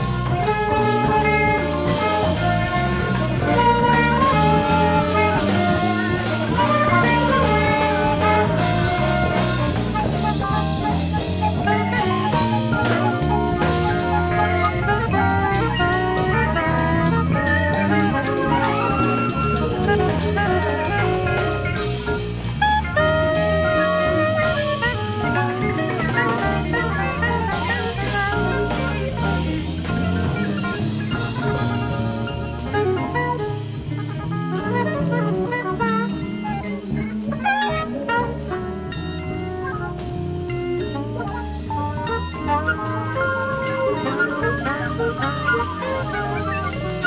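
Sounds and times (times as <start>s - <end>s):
brass and saxophone chords: 0.0s - 47.0s
drum kit: 0.0s - 47.0s.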